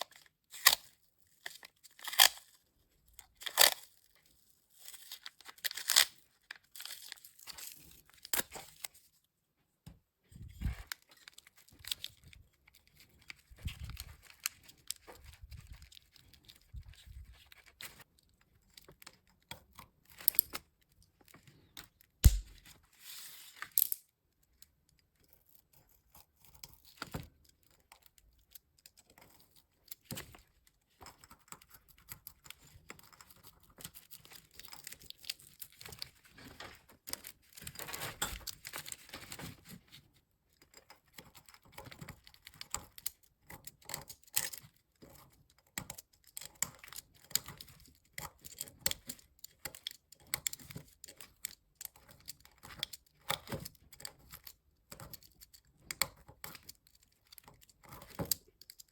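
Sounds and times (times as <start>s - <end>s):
small parts clicking and tapping: 23.7s - 25.3s, 40.6s - 58.9s.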